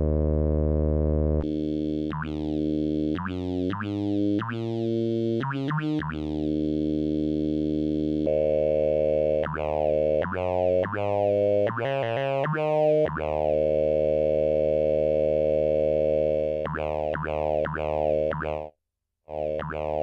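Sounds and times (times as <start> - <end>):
analog synthesizer playing: 6.1 - 18.7, 19.3 - 20.0.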